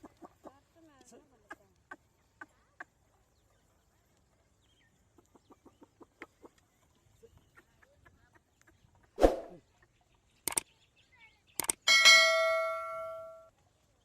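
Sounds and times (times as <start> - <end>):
metallic clang ringing: 11.9 - 13.5.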